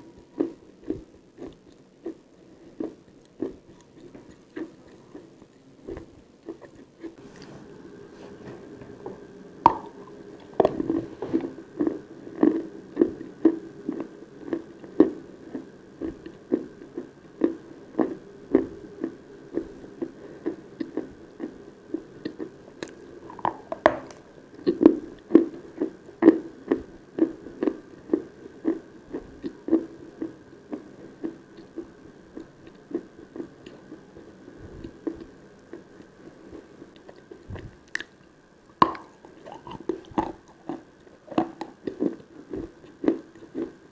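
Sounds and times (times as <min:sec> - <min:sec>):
rhythmic chewing: 0:00.0 - 0:43.9.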